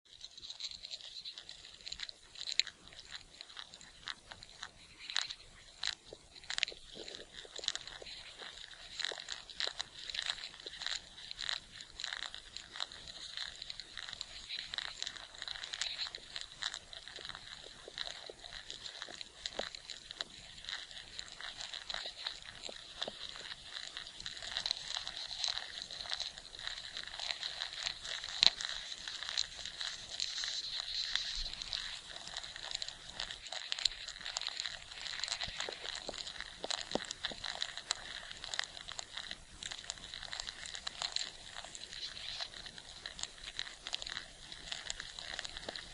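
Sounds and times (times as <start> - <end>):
ants crackling and rustling: 0.1 - 45.9.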